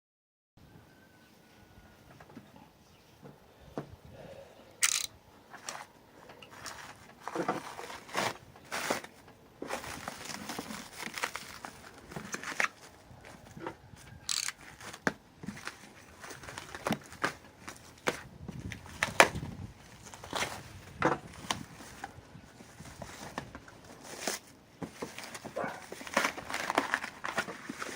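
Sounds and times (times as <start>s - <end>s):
packaging rustling and crinkling: 5.5s - 27.9s.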